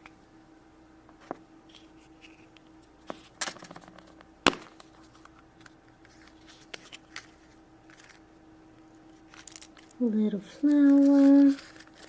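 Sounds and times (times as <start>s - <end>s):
faint steady hum: 0.0s - 12.0s
packaging crinkle: 9.1s - 12.0s.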